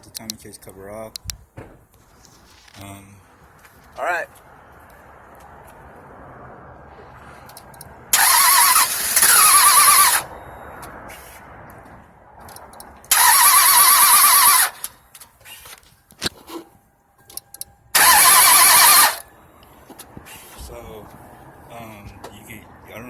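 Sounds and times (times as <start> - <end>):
car engine cranking on starter: 7.6 - 10.3, 12.6 - 15.0, 18.0 - 19.2.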